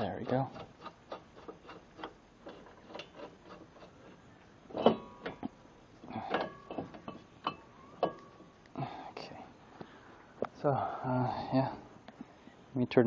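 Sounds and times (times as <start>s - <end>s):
metal tools clinking: 6.2s - 8.5s.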